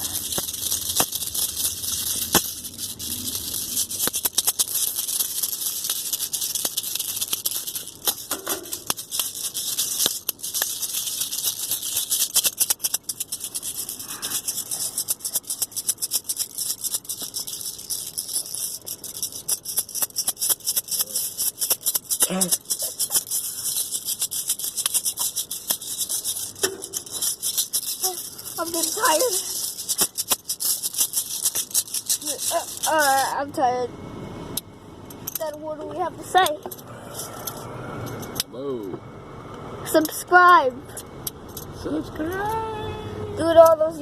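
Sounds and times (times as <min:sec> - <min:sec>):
rattle shaken fast: 0:00.0 - 0:33.5.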